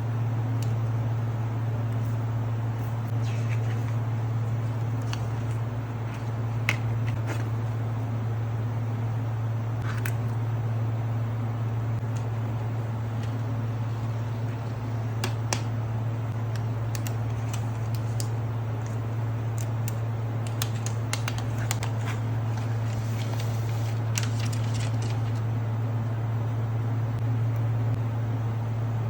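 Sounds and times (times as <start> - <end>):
low hum: 0.0 - 29.0
packaging clicks and taps: 19.6 - 22.1.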